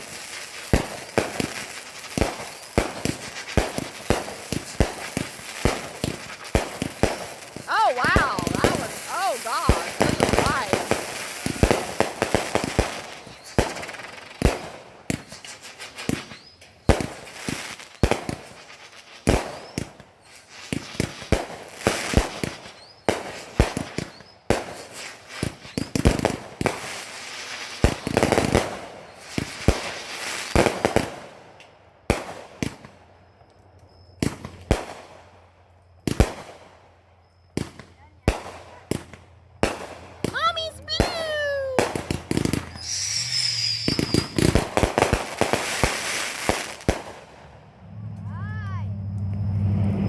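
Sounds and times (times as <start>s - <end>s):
firecrackers banging: 0.0s - 20.0s, 37.6s - 50.0s
firecracker fizzing: 0.0s - 31.2s, 40.2s - 47.4s.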